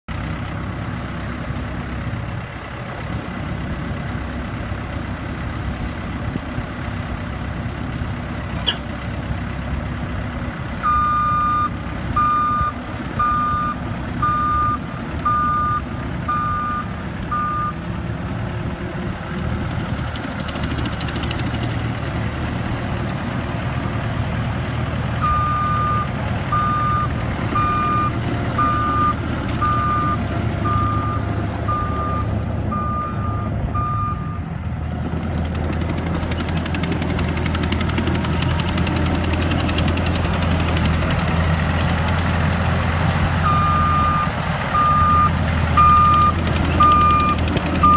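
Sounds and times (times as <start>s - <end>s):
skid steer engine running: 0.1s - 47.9s
backup alarm beeping: 10.8s - 17.8s, 25.2s - 34.4s, 43.4s - 47.9s.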